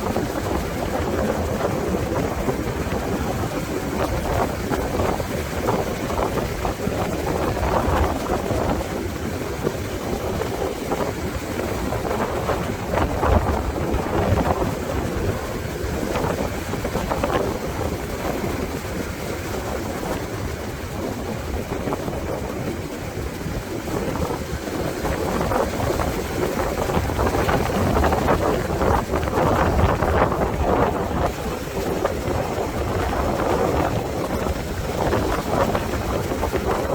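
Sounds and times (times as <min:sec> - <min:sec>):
ocean surf: 0:00.0 - 0:36.9
wind buffeting microphone: 0:00.0 - 0:36.9.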